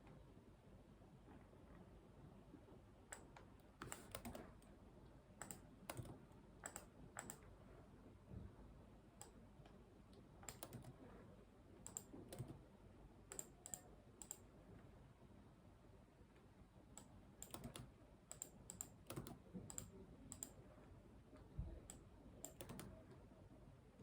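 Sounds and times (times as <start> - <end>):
faint computer keyboard typing: 3.1 - 4.8, 5.4 - 7.6, 9.2 - 11.1, 11.8 - 14.6, 16.9 - 20.7, 21.4 - 23.3.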